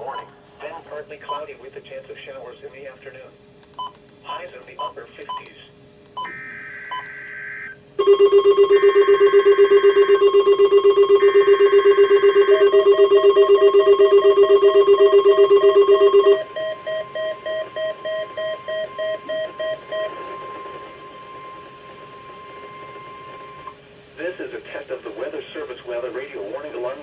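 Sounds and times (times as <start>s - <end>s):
quieter beeping alarm: 6.2s - 23.7s
rapidly pulsing alarm tone: 6.2s - 23.7s.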